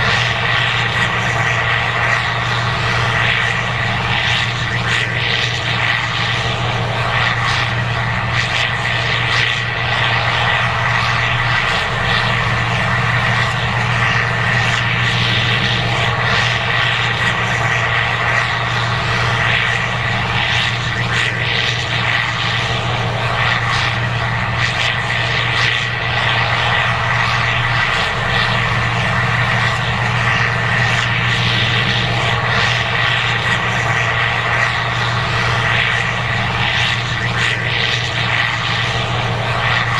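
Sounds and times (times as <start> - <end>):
combine engine drone: 0.0 - 39.9
machinery high whine: 0.0 - 39.9.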